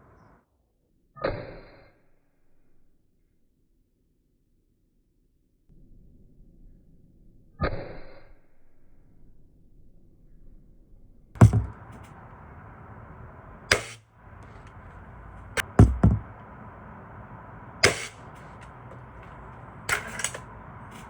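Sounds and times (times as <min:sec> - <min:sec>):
air rifle cracks and clacks: 0:13.7 - 0:16.6, 0:17.4 - 0:21.0.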